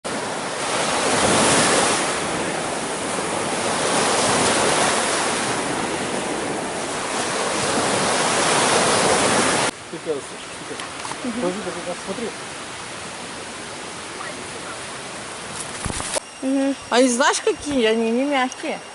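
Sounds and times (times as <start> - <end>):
waterfall rushing: 0.1 - 15.6.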